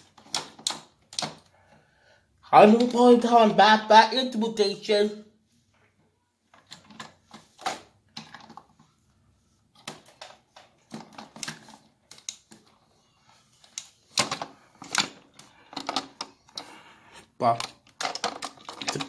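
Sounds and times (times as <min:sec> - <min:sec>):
plastic toy train pieces clicking: 0:17.4 - 0:19.0.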